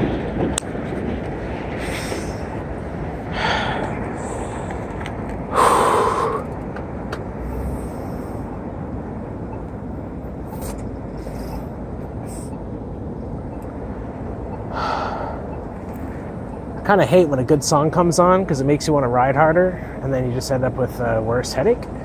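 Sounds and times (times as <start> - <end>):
steady rushing background noise: 0.0 - 22.0
person breathing hard: 1.8 - 2.5, 3.3 - 4.9, 5.5 - 6.6, 14.7 - 15.5
gasping breath: 3.3 - 4.8, 5.5 - 6.6, 14.7 - 15.5.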